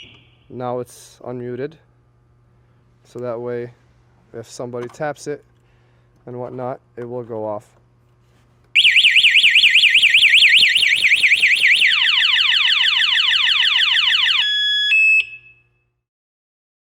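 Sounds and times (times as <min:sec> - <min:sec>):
motorcycle alarm siren: 0:00.0 - 0:00.5, 0:08.8 - 0:15.9.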